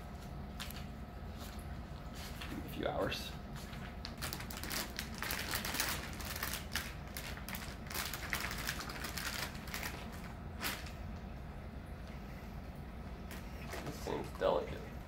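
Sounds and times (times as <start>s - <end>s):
packaging rustling: 3.7s - 11.0s.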